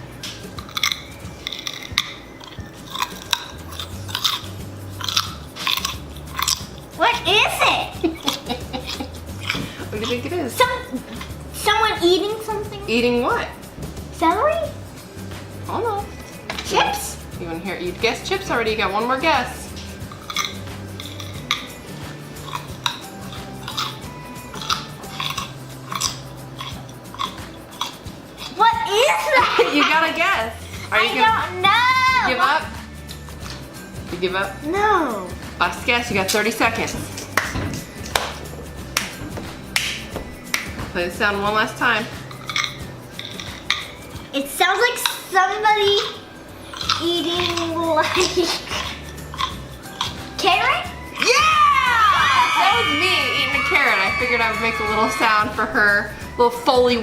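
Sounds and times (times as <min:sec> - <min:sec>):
person chewing raw carrot: 0:00.4 - 0:06.9, 0:19.9 - 0:28.6, 0:46.6 - 0:50.3.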